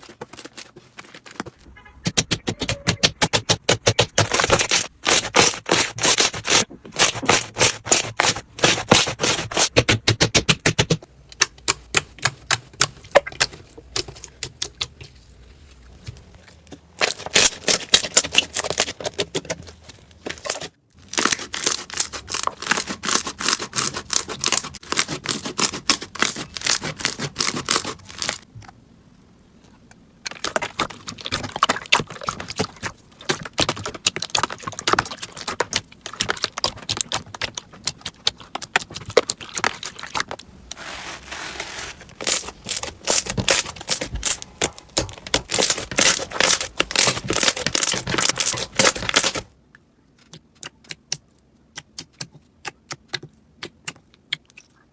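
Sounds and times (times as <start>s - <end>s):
slime crackling and popping: 42.2s - 49.4s.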